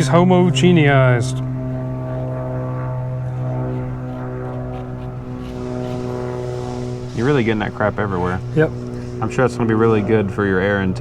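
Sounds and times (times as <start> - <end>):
engine droning: 0.0 - 11.0.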